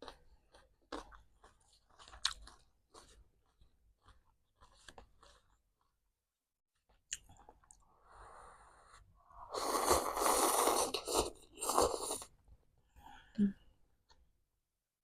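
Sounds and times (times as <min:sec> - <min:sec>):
person hissing air through mouth: 0:09.4 - 0:12.3.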